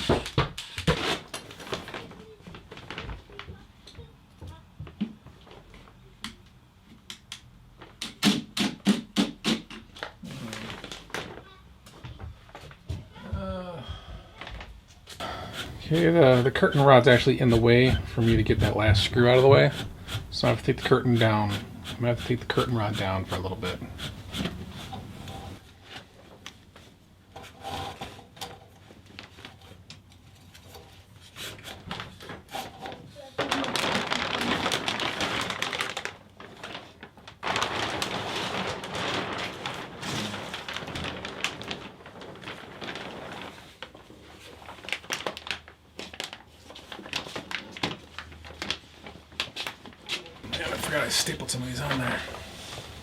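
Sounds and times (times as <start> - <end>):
fabric rustling: 15.7 - 26.2, 32.1 - 53.0.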